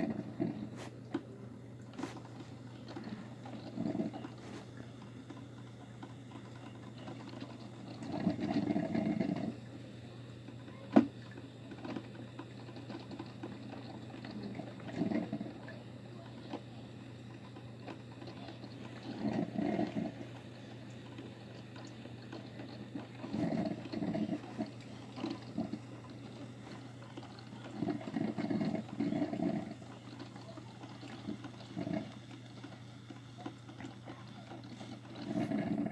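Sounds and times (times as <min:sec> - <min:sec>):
coffee machine humming: 0:00.0 - 0:35.9
watery gurgling: 0:00.0 - 0:35.9.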